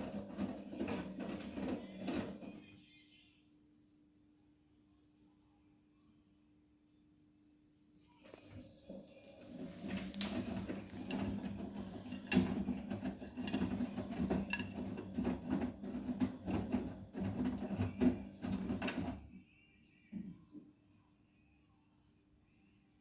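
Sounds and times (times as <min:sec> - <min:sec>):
washing machine drum clicks and rattles: 0:00.0 - 0:02.6, 0:08.9 - 0:19.4
washing machine motor hum: 0:00.0 - 0:03.1, 0:08.1 - 0:19.5.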